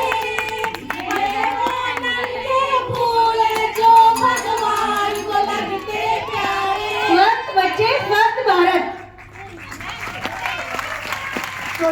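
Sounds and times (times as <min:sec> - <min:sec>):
children singing in unison: 0:00.0 - 0:07.4
hands clapping: 0:09.0 - 0:11.9.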